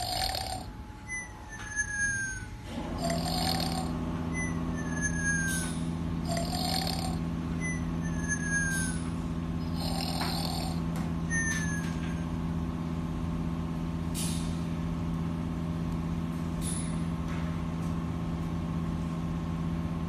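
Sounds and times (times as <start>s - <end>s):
breathy hissing exhales: 0.0s - 0.7s, 2.7s - 4.0s, 5.5s - 7.3s, 9.6s - 10.9s
snoring rumble: 0.0s - 1.2s, 1.8s - 9.0s, 9.6s - 11.8s.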